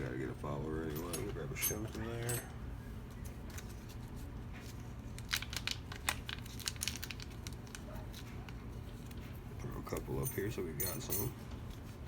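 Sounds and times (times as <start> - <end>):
light crinkling: 3.1 - 10.2.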